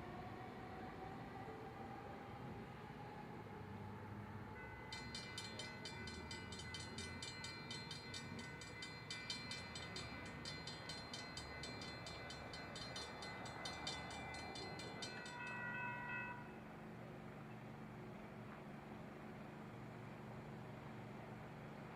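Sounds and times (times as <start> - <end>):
trolley train rumble: 0.0 - 21.9
warning bell ringing rapidly: 4.6 - 16.4.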